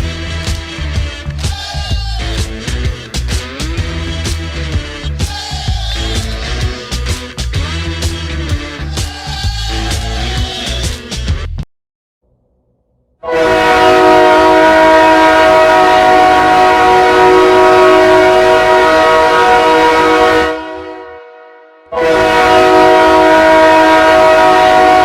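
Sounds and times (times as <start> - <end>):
goal horn blasts: 13.2 - 25.0.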